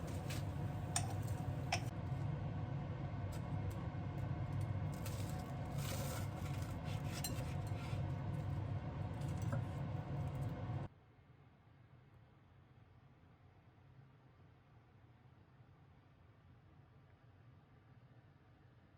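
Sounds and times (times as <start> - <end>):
dishes clinking and scraping: 0.0 - 1.9, 5.2 - 8.0.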